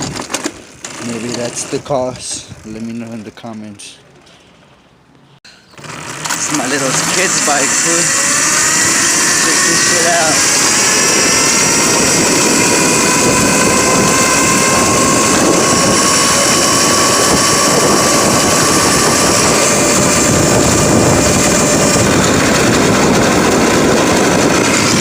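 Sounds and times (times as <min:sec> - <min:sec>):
electric motor whine: 0:05.7 - 0:25.0.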